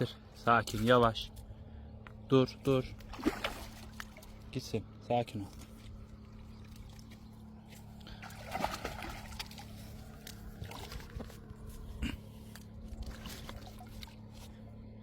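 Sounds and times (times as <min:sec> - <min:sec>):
low hum: 0:00.0 - 0:15.0
water splashing: 0:02.9 - 0:04.5, 0:08.1 - 0:11.6, 0:12.9 - 0:14.4.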